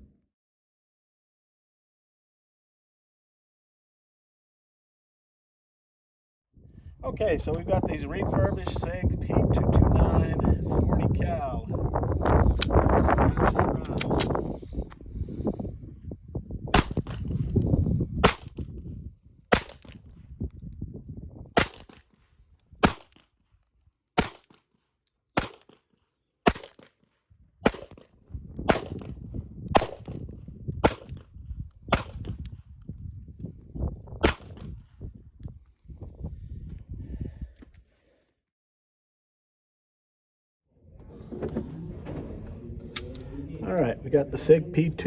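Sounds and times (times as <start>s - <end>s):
pistol shots: 16.7s - 17.2s, 24.2s - 24.6s, 25.4s - 25.7s, 26.5s - 26.9s, 27.6s - 28.0s, 28.7s - 29.1s, 31.9s - 32.3s.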